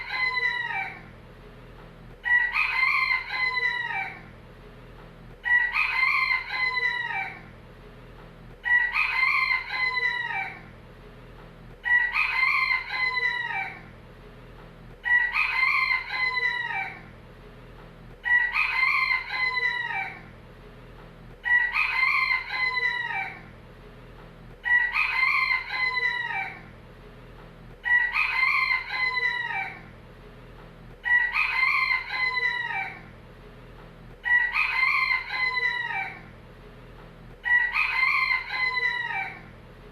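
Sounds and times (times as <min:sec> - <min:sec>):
rooster crowing: 0:00.0 - 0:01.1, 0:02.2 - 0:04.3, 0:05.4 - 0:07.5, 0:08.6 - 0:10.7, 0:11.8 - 0:13.9, 0:15.0 - 0:17.1, 0:18.2 - 0:20.3, 0:21.4 - 0:23.5, 0:24.6 - 0:26.7, 0:27.8 - 0:29.9, 0:31.0 - 0:33.1, 0:34.2 - 0:36.3, 0:37.4 - 0:39.5.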